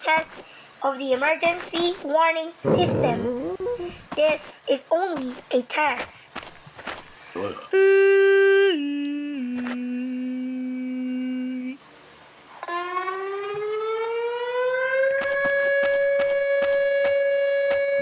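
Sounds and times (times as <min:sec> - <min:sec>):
rising siren alert tone: 0:02.6 - 0:04.0
siren tone dropping in pitch: 0:02.6 - 0:04.0.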